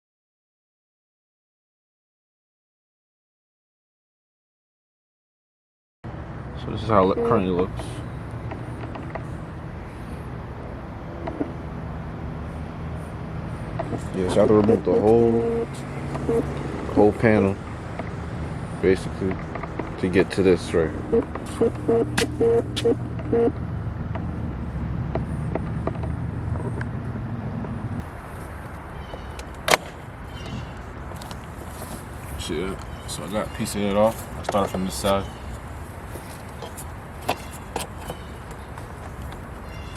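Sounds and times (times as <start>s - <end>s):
loud plastic snap: 29.5s - 30.0s.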